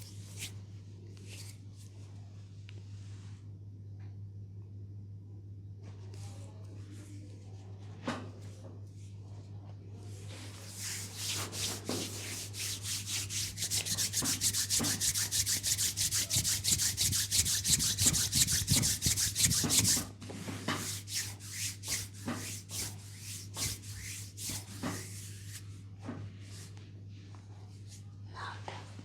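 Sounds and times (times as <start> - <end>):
hands rubbing over skin: 10.3 - 20.1, 20.8 - 25.6.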